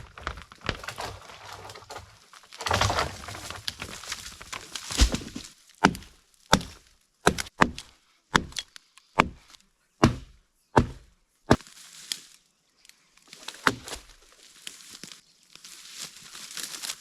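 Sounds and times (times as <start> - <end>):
axe chopping wood: 2.6 - 11.6, 13.6 - 14.1.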